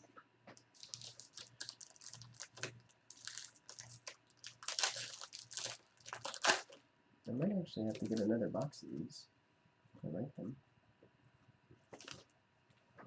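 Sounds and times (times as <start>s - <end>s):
foil pack crinkling: 0.6s - 6.8s, 7.9s - 8.3s, 12.0s - 12.3s.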